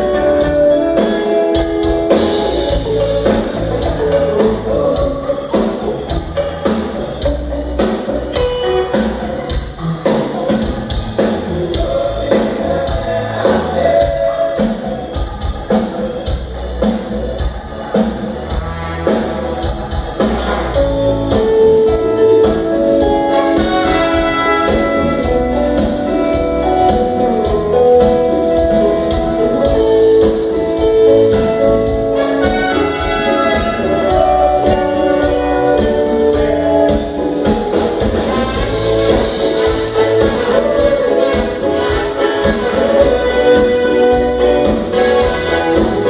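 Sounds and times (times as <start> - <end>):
drum kit beat: 0.0 - 46.0
live band playing: 0.0 - 46.0
person singing: 0.0 - 46.0.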